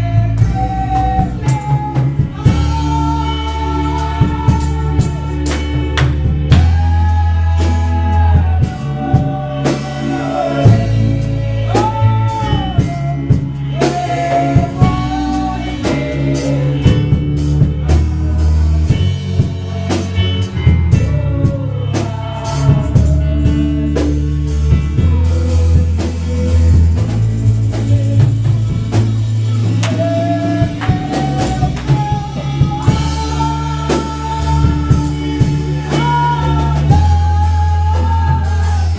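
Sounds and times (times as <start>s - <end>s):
bass line: 0.0s - 38.9s
steady drum beat: 0.0s - 38.9s
person singing melody: 24.9s - 38.9s.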